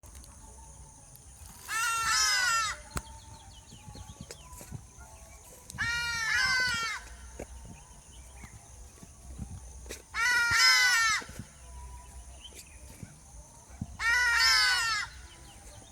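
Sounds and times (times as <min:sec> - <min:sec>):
ibis harsh calls: 0:01.6 - 0:03.0, 0:10.2 - 0:11.3, 0:14.0 - 0:15.4.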